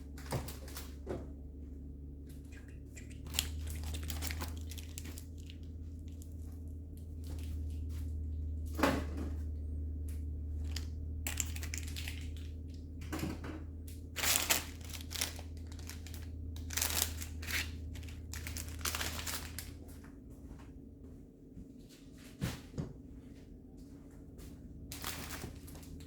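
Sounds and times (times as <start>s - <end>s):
steady low hum: 0.0s - 26.0s
plastic packaging crinkling: 2.4s - 8.5s, 10.4s - 13.0s, 14.0s - 19.8s, 24.9s - 26.0s.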